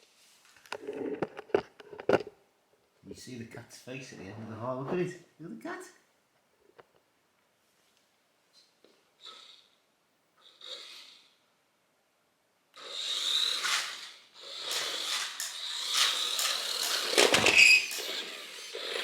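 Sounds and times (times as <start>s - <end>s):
toy truck motor and gears whining: 9.2s - 9.8s, 10.4s - 11.4s, 12.8s - 19.0s
tyre noise on hard floor: 13.4s - 19.0s
toy truck knocking into something: 14.8s - 18.2s.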